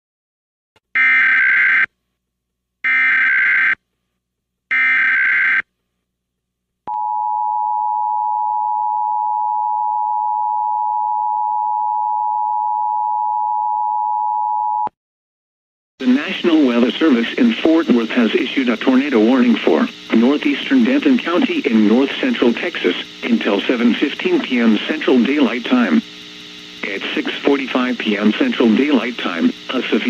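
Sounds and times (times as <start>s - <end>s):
harsh digital data bursts: 16.1s - 30.0s.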